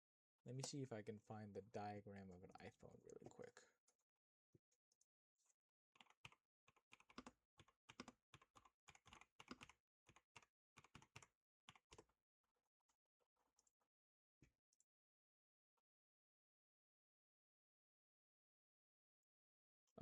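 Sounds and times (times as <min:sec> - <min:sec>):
faint keyboard typing: 0:06.0 - 0:12.1.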